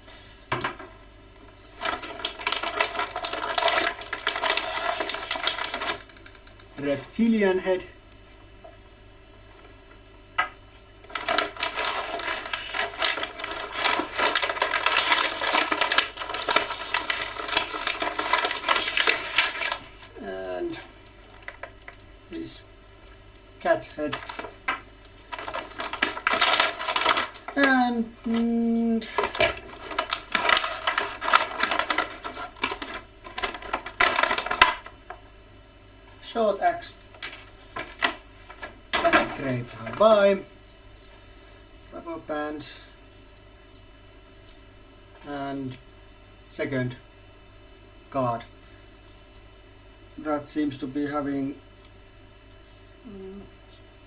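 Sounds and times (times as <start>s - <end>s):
plastic packaging crackling: 1.5s - 7.2s, 11.0s - 22.1s, 24.0s - 35.2s, 37.0s - 40.4s.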